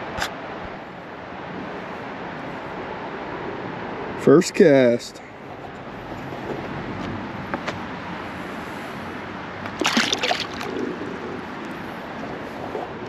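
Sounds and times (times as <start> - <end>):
loud rush of noise: 4.9 - 13.0
creek water running: 8.0 - 13.0.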